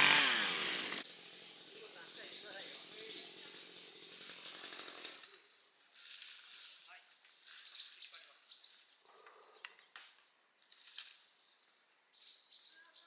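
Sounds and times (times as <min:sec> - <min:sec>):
songbird singing: 0:02.0 - 0:04.2, 0:07.2 - 0:10.0, 0:11.4 - 0:13.0.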